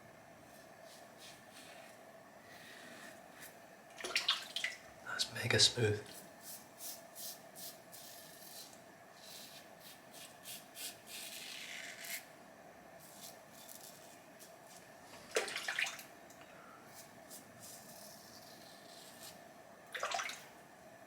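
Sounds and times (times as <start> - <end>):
faint steady hum: 0.0 - 21.0.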